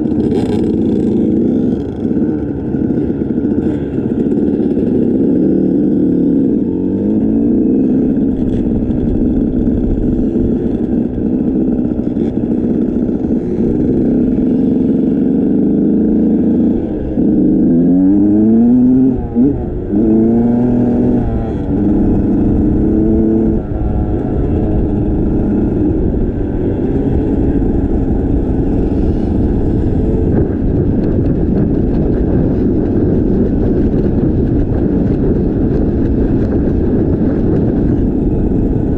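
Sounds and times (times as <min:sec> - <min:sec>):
constant rushing noise: 0:00.0 - 0:38.9
vehicle engine revving: 0:00.0 - 0:38.9.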